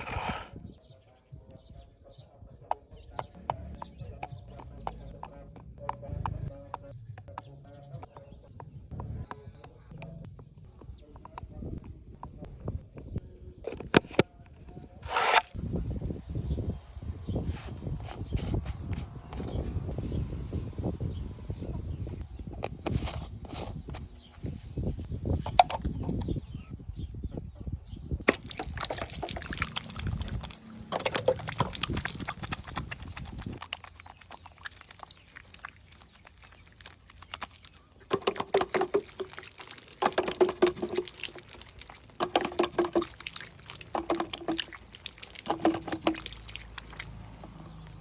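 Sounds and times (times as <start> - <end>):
water sloshing and splashing: 28.3 - 48.0.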